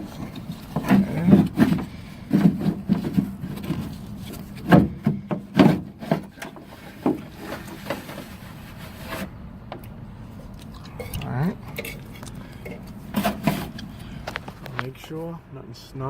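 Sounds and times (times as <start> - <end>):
wire rubbing and scraping: 6.0 - 9.3.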